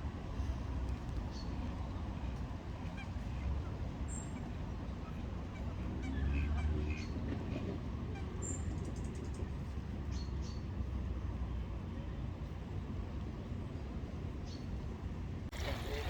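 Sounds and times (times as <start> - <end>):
ducks quacking: 4.4 - 8.4.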